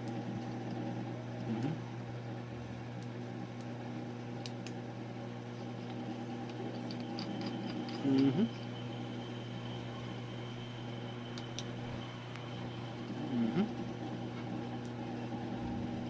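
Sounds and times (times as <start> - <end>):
small motor humming: 5.6 - 16.0.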